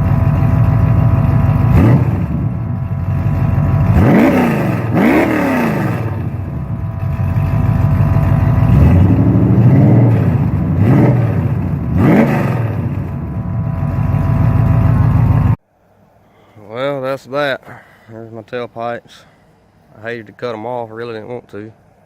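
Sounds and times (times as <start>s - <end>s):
car engine idling and revving: 0.0s - 15.6s.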